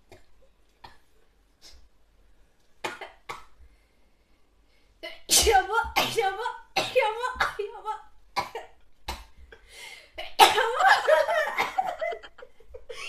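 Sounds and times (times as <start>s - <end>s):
person coughing and sneezing: 2.8s - 3.6s, 5.2s - 7.8s, 8.4s - 9.3s, 10.2s - 12.3s.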